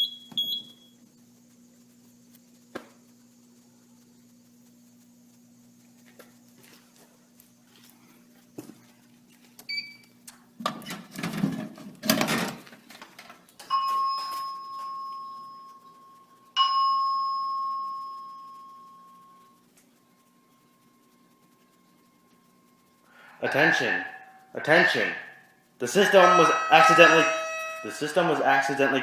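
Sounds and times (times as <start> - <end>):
chime tones over speakers: 13.7 - 19.5, 23.4 - 29.0.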